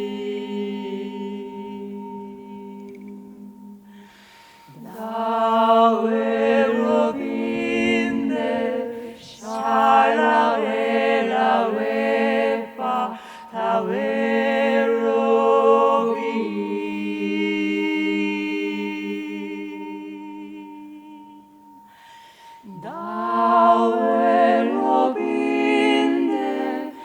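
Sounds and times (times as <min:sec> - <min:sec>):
low voices singing a drone: 0:00.0 - 0:27.0
high voice singing a melody: 0:04.8 - 0:14.1.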